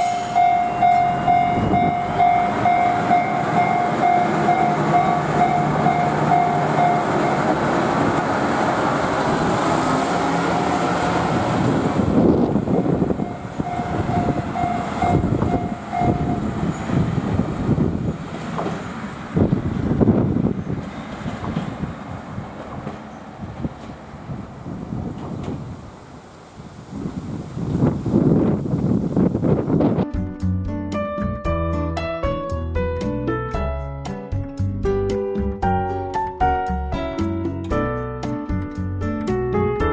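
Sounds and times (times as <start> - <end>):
level-crossing warning bell: 0.0 - 9.6, 12.8 - 16.8
diesel railcar running on track: 0.0 - 30.0.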